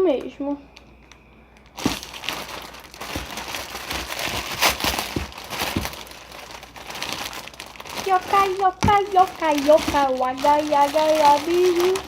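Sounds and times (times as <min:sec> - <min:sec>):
plastic crinkling and rustling: 0:01.1 - 0:12.0.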